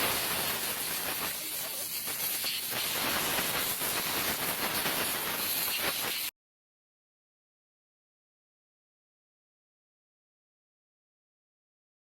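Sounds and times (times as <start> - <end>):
steady hiss: 0.0 - 6.3.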